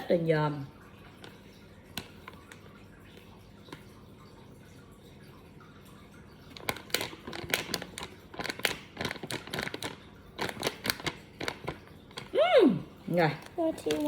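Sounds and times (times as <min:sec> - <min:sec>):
flour packet crinkling: 0:06.6 - 0:14.0.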